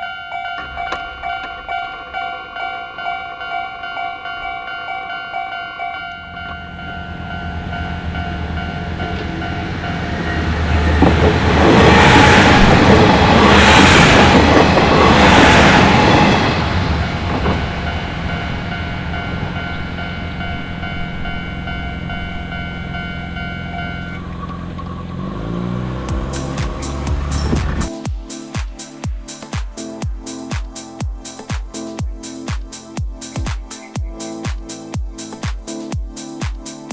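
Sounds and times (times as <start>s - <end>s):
wheel clatter: 0.0s - 7.3s, 8.1s - 28.0s
level crossing warning bells: 0.0s - 36.4s
train rumble: 0.0s - 36.9s.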